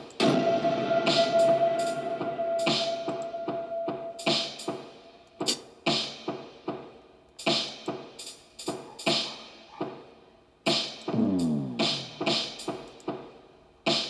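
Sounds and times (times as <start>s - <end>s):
drum hits ringing: 0.2s - 4.9s.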